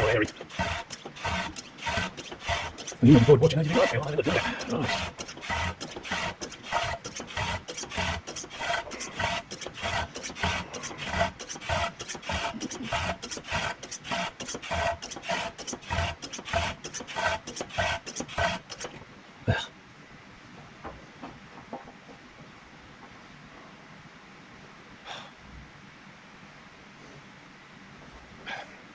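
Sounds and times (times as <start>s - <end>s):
hand pump strokes: 0.0s - 19.0s.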